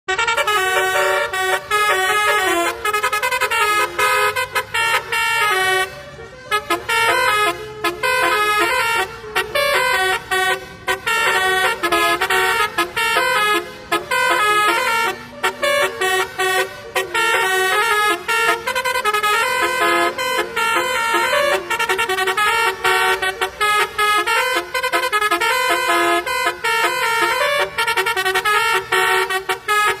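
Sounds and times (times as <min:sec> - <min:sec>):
musical air horn melody: 0:00.1 - 0:30.0.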